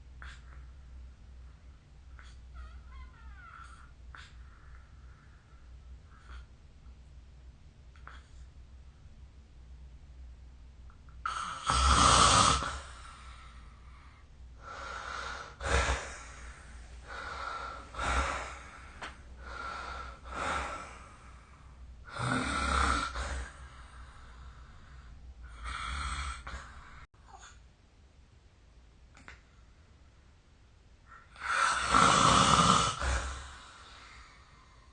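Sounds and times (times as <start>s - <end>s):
person snoring: 11.3s - 13.2s, 14.6s - 21.4s, 22.1s - 23.7s, 31.4s - 34.2s.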